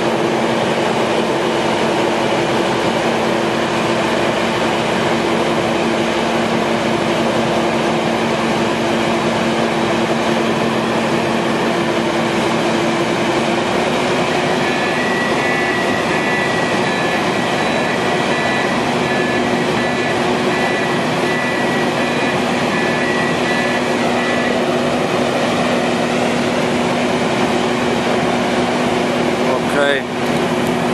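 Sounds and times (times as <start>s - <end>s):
drill rig running: 0.0s - 30.9s
faint high whine: 13.8s - 28.4s.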